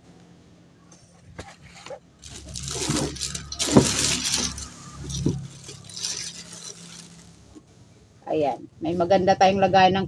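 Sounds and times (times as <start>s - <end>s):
packaging rustling: 1.7s - 7.7s.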